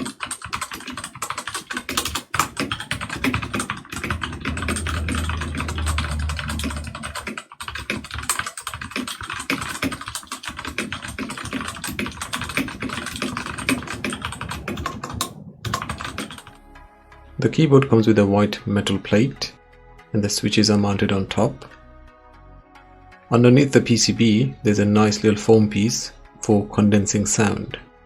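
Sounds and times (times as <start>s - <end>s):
fast typing on mechanical keyboard: 0.0s - 16.6s.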